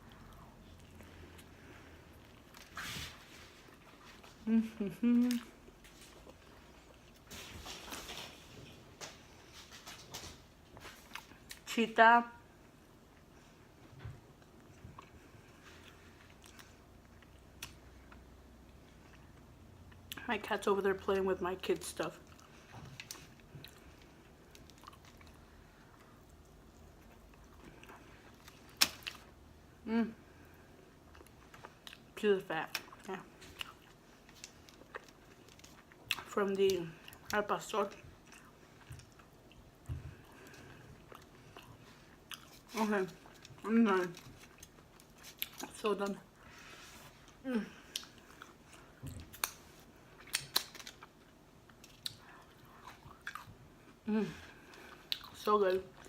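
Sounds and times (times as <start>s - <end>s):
faint chewing of food: 0.0s - 11.7s, 12.6s - 20.6s, 22.1s - 29.4s, 30.2s - 56.0s
person humming: 4.4s - 5.6s.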